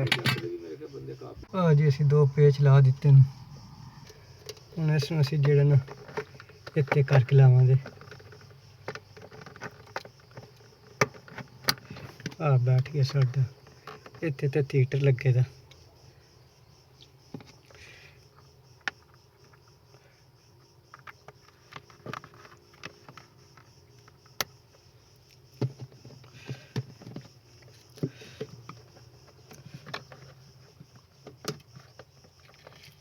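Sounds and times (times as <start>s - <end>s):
clicks and knocks of tools: 0.0s - 0.5s.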